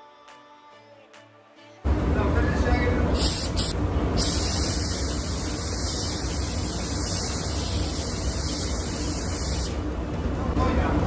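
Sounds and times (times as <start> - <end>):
paint spray gun hissing: 3.2 - 9.8.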